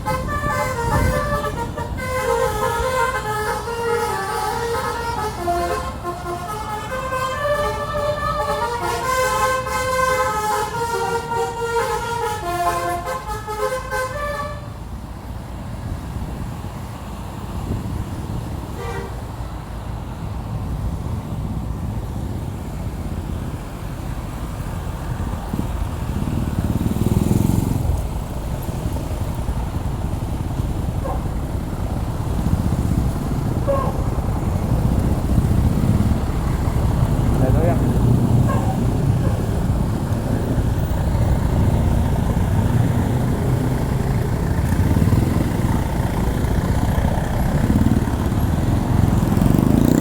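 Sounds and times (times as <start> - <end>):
musical air horn melody: 0.0 - 14.8
low engine and road rumble: 0.0 - 50.0.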